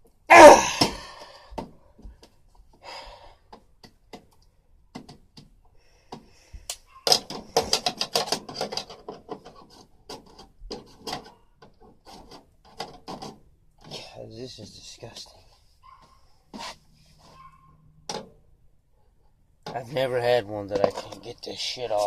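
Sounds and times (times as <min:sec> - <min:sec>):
clicks and knocks: 0:07.0 - 0:14.0
hand scraping air conditioner casing: 0:07.0 - 0:14.3, 0:15.9 - 0:17.8, 0:19.7 - 0:22.0.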